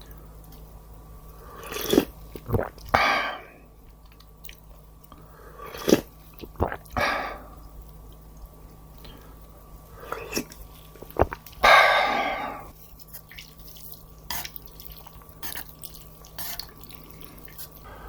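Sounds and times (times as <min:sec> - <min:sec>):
chewing and mouth smacks: 0:03.9 - 0:07.0, 0:10.1 - 0:11.7, 0:12.8 - 0:17.9.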